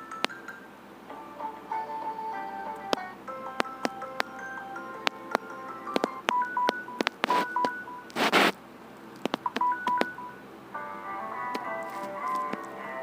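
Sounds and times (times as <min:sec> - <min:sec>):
electronic ringtone beeps: 0:03.3 - 0:08.2, 0:09.5 - 0:10.4
sharp clicks: 0:05.0 - 0:08.6, 0:09.2 - 0:10.2
hissing bursts: 0:07.2 - 0:08.6.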